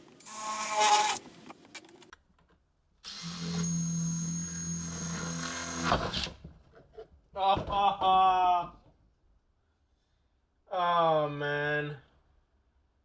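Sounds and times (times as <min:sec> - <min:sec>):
power drill boring a hole: 0:00.2 - 0:01.2, 0:03.1 - 0:06.1.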